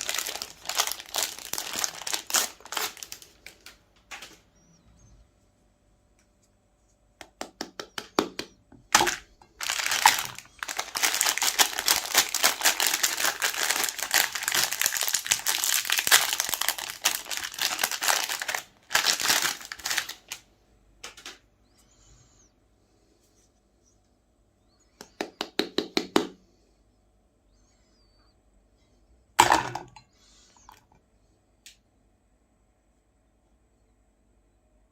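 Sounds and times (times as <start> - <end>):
ice cream wrapper crinkling: 0.0 - 4.4, 8.9 - 21.4.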